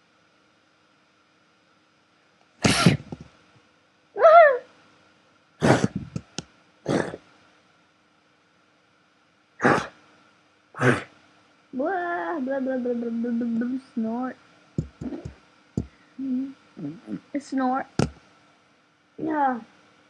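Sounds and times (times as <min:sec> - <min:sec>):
person sneezing: 0:02.6 - 0:03.1, 0:05.6 - 0:06.1, 0:06.9 - 0:07.2, 0:09.6 - 0:10.0, 0:10.8 - 0:11.1.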